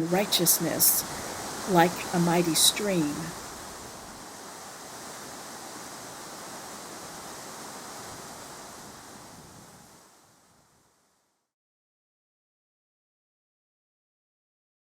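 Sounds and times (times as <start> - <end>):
steady hiss: 0.0 - 11.4.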